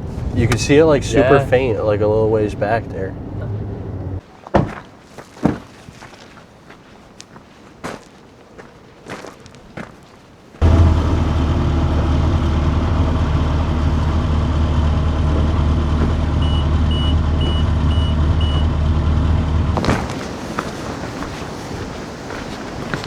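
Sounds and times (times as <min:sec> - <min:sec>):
excavator diesel engine running: 0:00.0 - 0:04.2, 0:10.6 - 0:23.0
high warning alarm beeps: 0:16.4 - 0:18.7.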